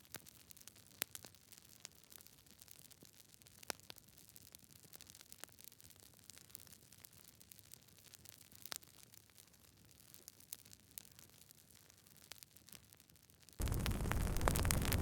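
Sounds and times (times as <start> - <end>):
wood fire crackling: 13.6 - 15.0.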